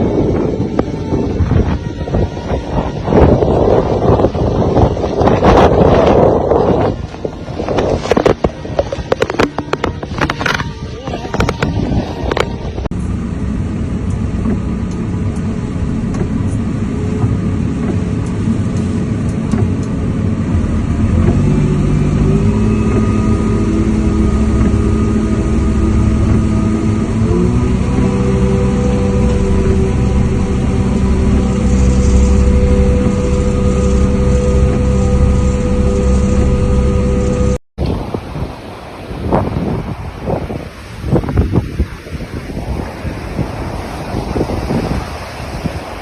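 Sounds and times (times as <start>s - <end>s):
engine running: 0.0s - 46.0s
heavy low rumble: 0.0s - 46.0s.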